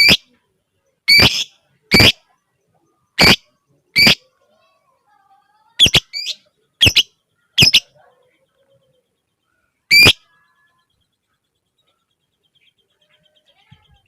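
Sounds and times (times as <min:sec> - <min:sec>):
lovebird shrill calls: 0:00.0 - 0:00.3, 0:01.1 - 0:02.2, 0:03.2 - 0:03.4, 0:04.0 - 0:04.2, 0:05.8 - 0:07.9, 0:09.9 - 0:10.3.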